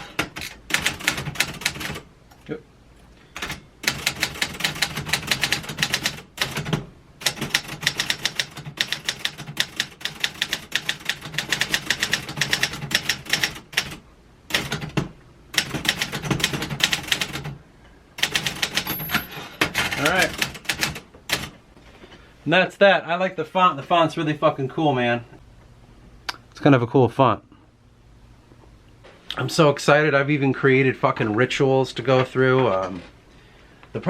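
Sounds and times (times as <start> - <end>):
typewriter keys clacking: 3.4 - 15.0, 18.2 - 21.5.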